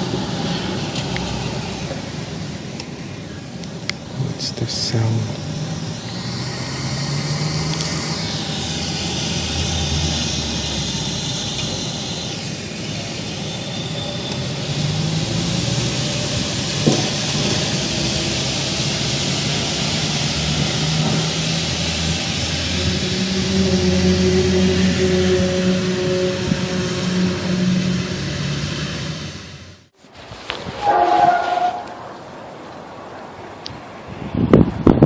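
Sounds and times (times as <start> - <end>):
low droning hum: 0.0 - 29.9
hiss: 4.0 - 29.6.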